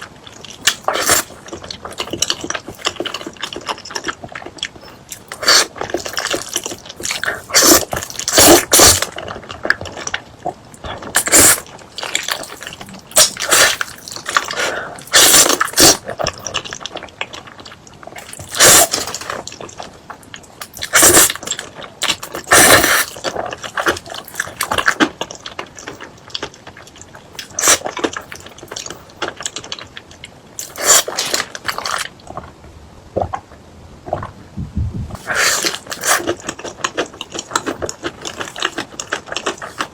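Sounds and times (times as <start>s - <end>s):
loud bites and chewing: 0.0s - 32.5s, 35.2s - 39.9s.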